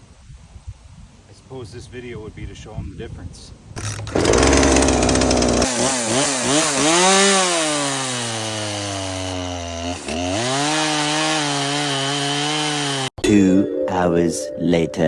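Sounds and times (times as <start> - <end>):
chainsaw cutting wood: 3.8 - 13.2.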